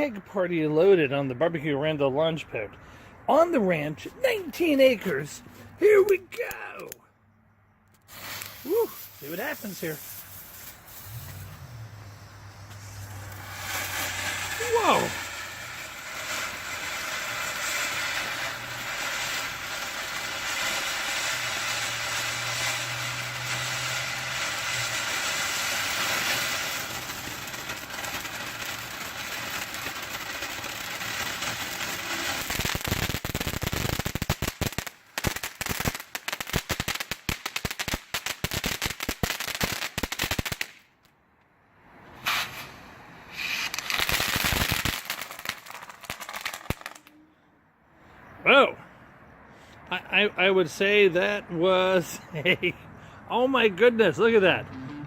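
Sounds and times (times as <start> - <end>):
firework crackling pops: 7.9 - 41.2, 42.2 - 47.2
firework fountain hissing: 8.0 - 40.8, 42.2 - 47.1.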